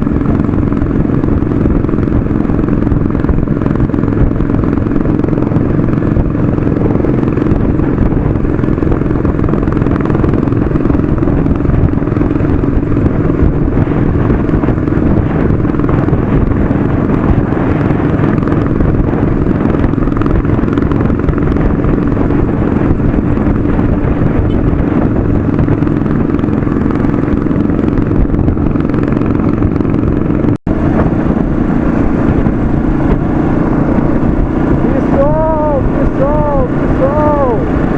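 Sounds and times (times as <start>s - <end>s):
motorcycle engine running: 0.0s - 37.9s
road and wind noise: 0.0s - 37.9s.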